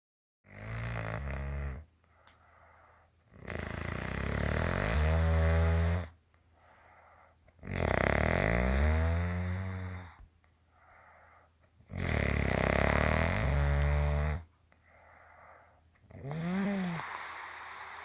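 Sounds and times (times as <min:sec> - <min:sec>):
woman snoring: 0:00.5 - 0:01.9, 0:03.3 - 0:06.2, 0:07.6 - 0:10.2, 0:11.9 - 0:14.5, 0:16.1 - 0:18.0
quiet breathing: 0:01.9 - 0:03.3, 0:06.3 - 0:07.6, 0:09.6 - 0:11.9, 0:14.4 - 0:18.0.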